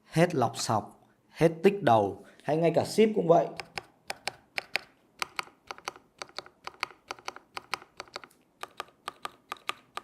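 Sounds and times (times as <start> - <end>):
keyboard key clacking: 3.6 - 10.0.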